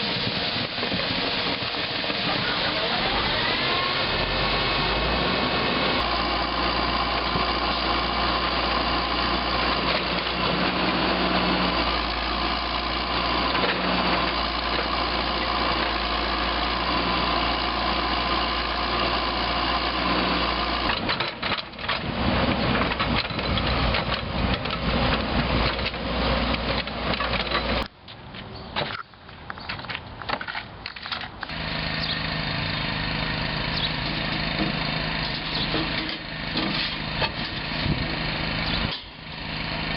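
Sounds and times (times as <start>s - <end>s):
heavy construction equipment engines: 0.0s - 39.9s.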